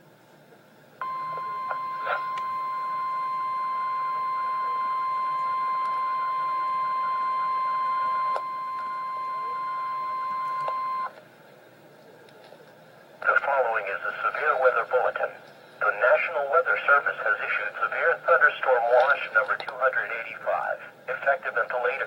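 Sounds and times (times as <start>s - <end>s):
steady high alarm beep: 1.0s - 11.1s.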